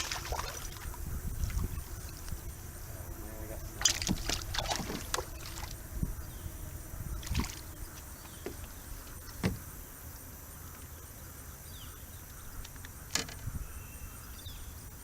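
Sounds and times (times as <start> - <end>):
sharp knocks in boat: 3.8 - 5.7, 8.2 - 8.7, 9.4 - 9.7.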